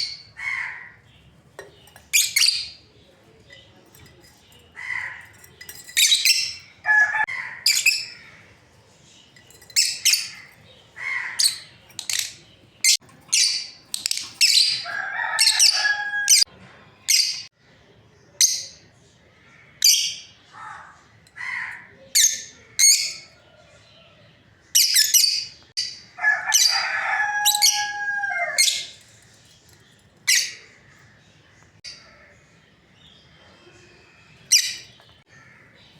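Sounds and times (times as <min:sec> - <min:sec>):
lovebirds chirping: 0:00.0 - 0:35.9.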